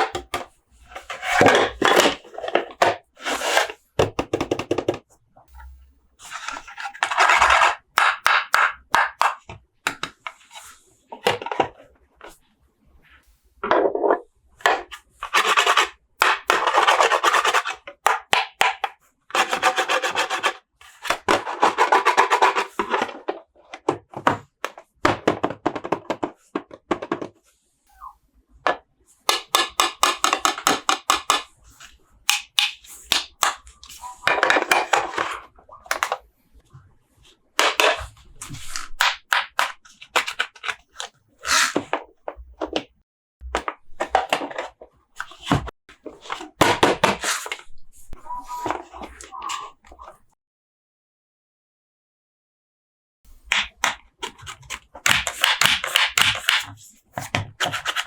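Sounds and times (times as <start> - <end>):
cardboard and plastic rubbing: 0.0 - 4.6, 53.5 - 58.0.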